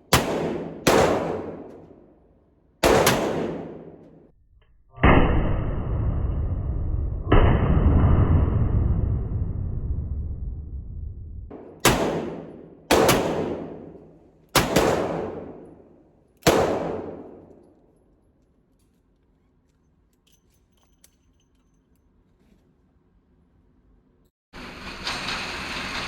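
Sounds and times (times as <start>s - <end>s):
revolver shots echoing: 0.0s - 1.8s, 2.8s - 4.1s, 11.5s - 17.6s.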